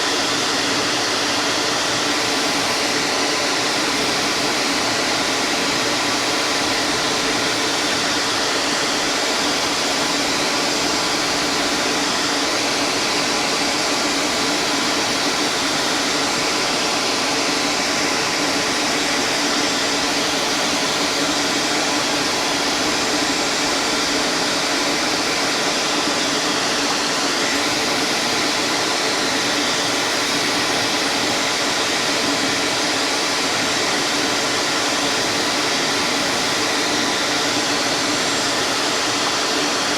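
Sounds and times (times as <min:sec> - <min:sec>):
power tool motor running: 0:00.0 - 0:39.9.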